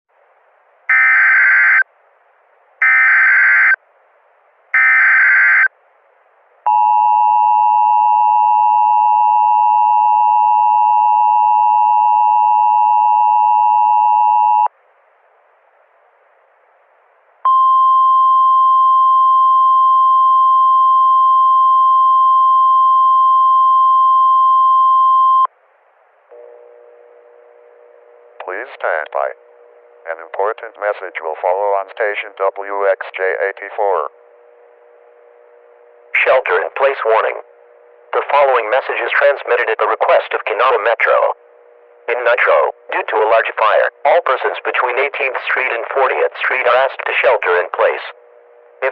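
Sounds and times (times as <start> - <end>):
steady warning tone: 0.9 - 1.9, 2.8 - 3.8, 4.8 - 5.7, 17.5 - 48.9.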